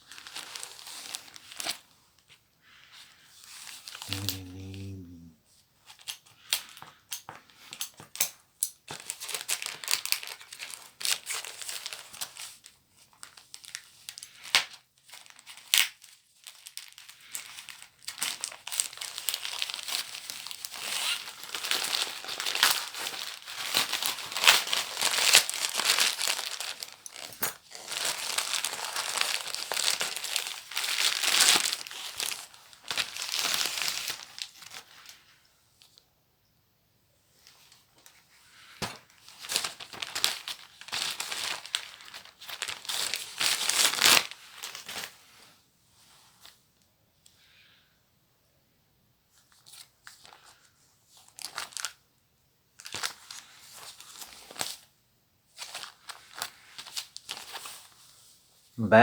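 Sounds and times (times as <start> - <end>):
paper and plastic being crumpled: 0.0 - 5.1, 8.9 - 35.9, 37.4 - 46.6, 49.3 - 52.0, 52.8 - 58.4.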